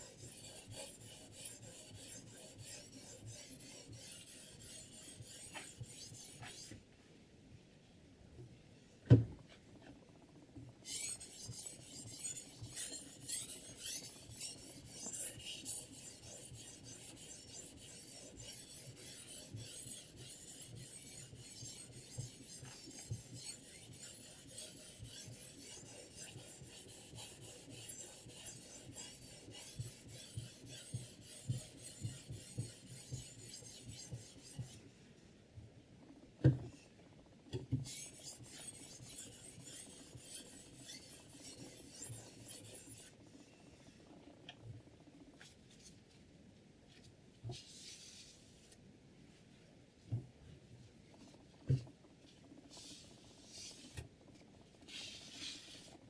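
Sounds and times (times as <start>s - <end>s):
sharpening stone scraping knife: 10.9s - 34.1s, 37.9s - 43.1s.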